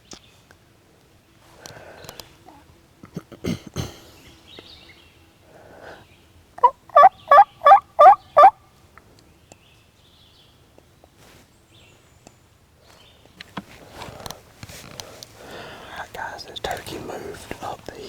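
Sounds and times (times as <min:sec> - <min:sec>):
faint clicks: 0:00.0 - 0:02.4
turkey gobbling: 0:06.6 - 0:08.6.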